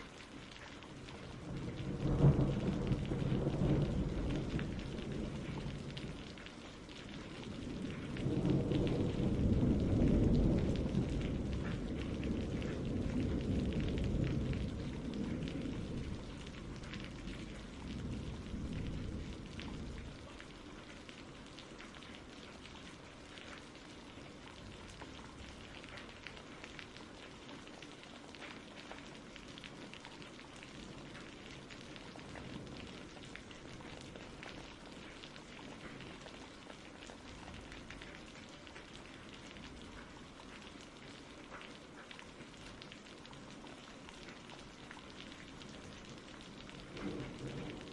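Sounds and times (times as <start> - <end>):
steady rain pattering: 0.0 - 47.9
low rumble of thunder: 0.1 - 27.8, 28.6 - 47.9.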